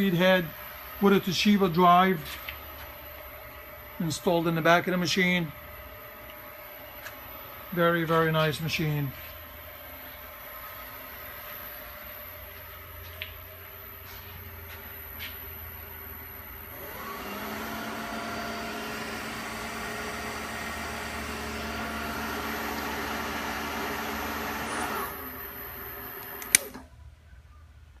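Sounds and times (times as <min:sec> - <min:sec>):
milling machine motor humming: 0:00.0 - 0:26.8
sharp click: 0:26.2 - 0:26.8.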